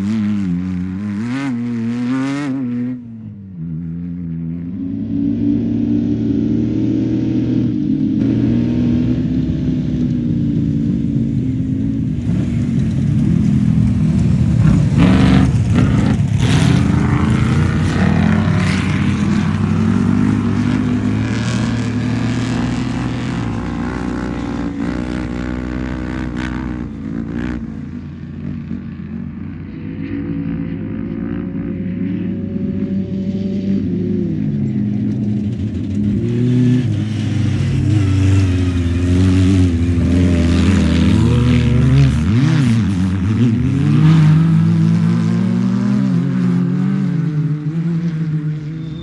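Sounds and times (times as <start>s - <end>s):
race vehicle engine revving: 12.2s - 27.5s.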